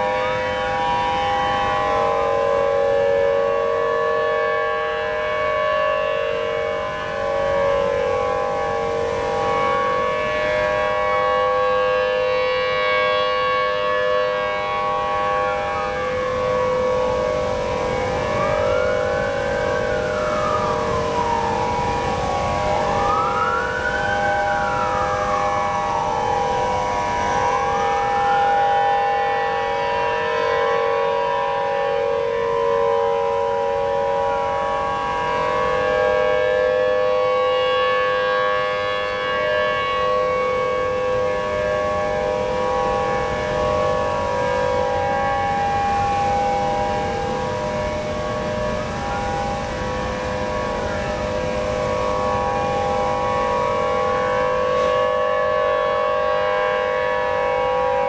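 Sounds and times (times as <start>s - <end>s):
civil defense sirens wailing: 0.0s - 58.0s
faint siren sliding in pitch: 0.0s - 58.0s.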